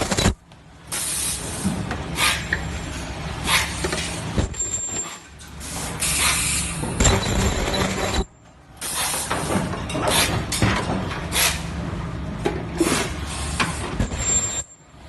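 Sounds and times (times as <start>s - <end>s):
welding machine humming: 7.0s - 8.3s.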